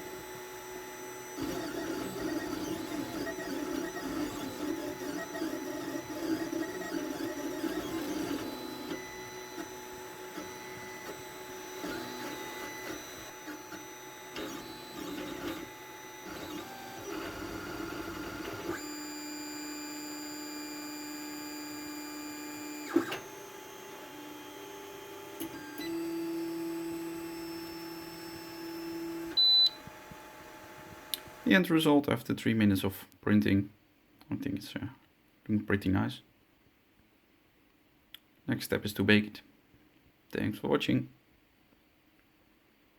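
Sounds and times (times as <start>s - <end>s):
stepper motors whining: 0.0s - 31.5s.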